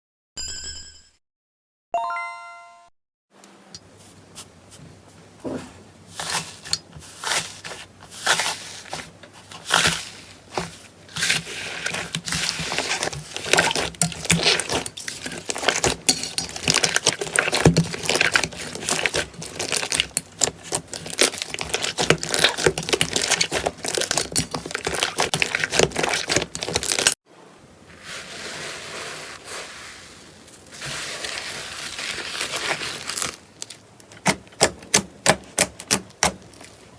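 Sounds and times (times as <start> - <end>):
slime squishing: 5.4 - 27.2, 28.0 - 36.9
slime crackling and popping: 11.1 - 27.2, 30.9 - 36.7.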